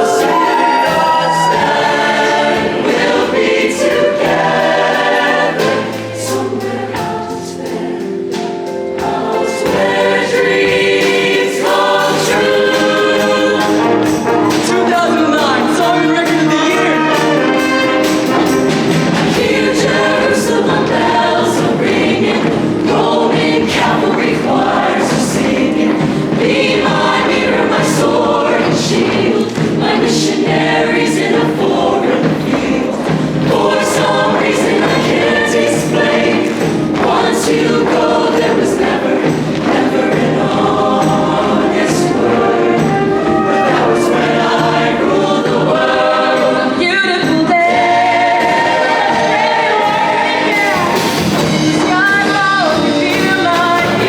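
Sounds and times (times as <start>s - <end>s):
choir singing in harmony: 0.0s - 54.0s
live band accompaniment: 0.0s - 54.0s
sharp percussion hits: 8.3s - 45.2s, 49.8s - 54.0s.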